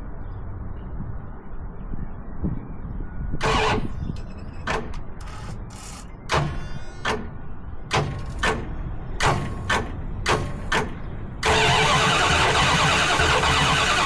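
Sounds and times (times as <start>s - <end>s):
loud irregular engine bursts: 3.4s - 7.1s, 7.9s - 14.0s
engine starting with low rumble: 3.4s - 7.2s, 7.9s - 14.0s.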